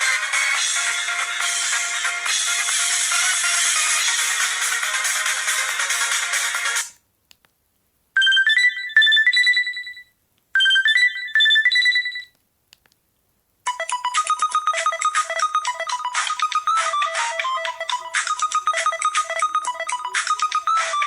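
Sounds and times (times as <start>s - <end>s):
mobile phone ringtones: 8.2s - 12.3s, 13.7s - 21.0s.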